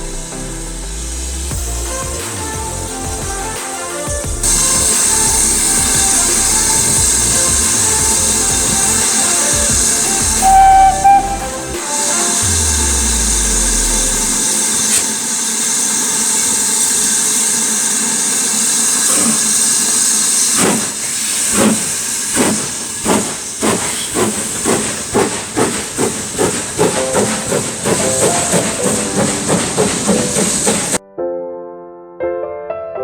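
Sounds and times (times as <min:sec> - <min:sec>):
steam locomotive hissing steam: 0:00.0 - 0:31.0
locomotive exhaust chuffs: 0:04.3 - 0:15.0, 0:15.9 - 0:31.0.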